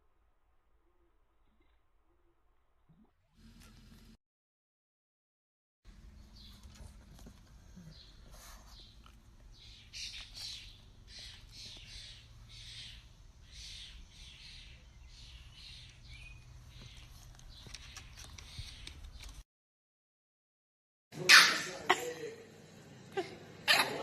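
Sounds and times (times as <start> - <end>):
dog snuffling breaths: 6.6 - 9.2.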